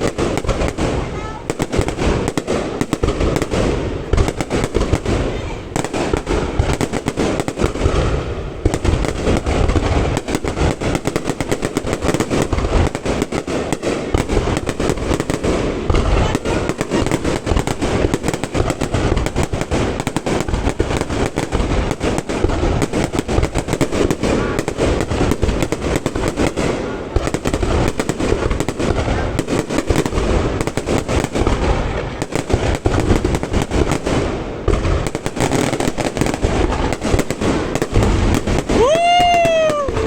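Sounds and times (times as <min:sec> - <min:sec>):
fireworks bangs and crackles: 0:00.0 - 0:40.0.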